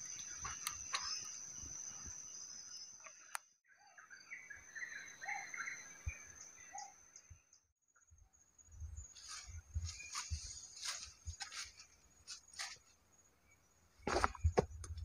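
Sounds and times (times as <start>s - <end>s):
insect trilling: 0.0s - 2.9s
bird chirping: 0.0s - 7.6s.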